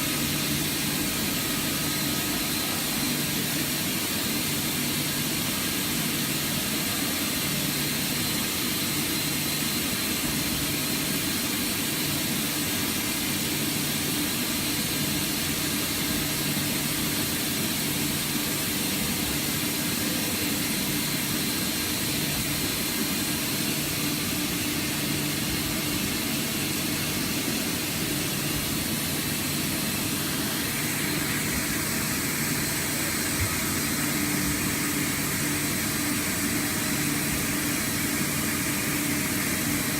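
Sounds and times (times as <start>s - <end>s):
machine hum and whir: 0.0s - 39.9s.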